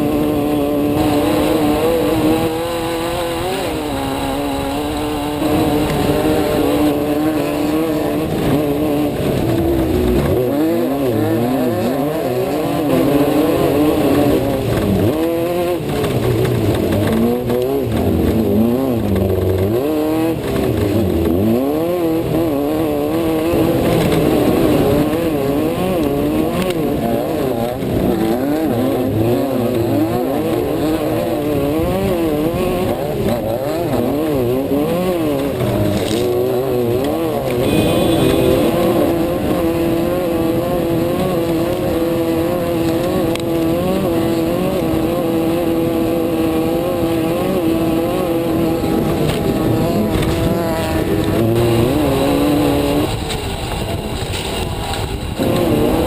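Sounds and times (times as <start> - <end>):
race car engine revving: 0.0 - 56.0.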